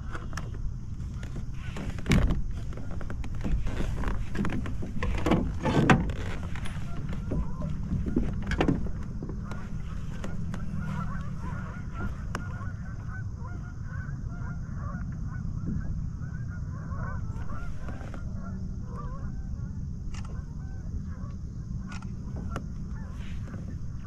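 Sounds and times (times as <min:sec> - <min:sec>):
steady low rumble: 0:00.0 - 0:24.0
geese honking: 0:06.2 - 0:24.0.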